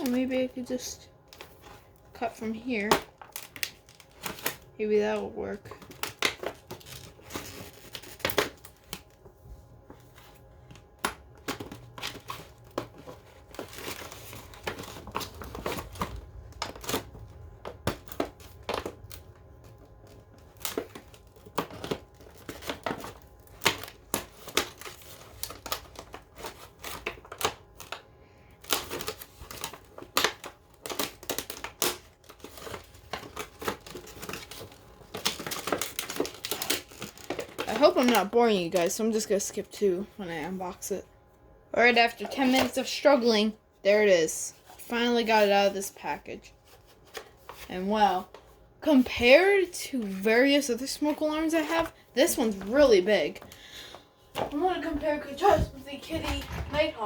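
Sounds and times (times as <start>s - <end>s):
packaging crinkling and tearing: 0.0s - 39.5s.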